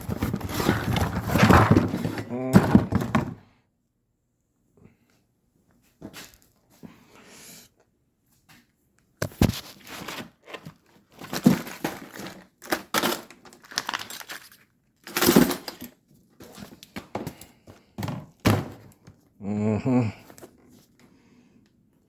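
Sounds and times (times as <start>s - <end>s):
rustling and crinkling material: 0.0s - 3.0s, 9.2s - 12.7s
small parts clattering: 11.2s - 17.5s.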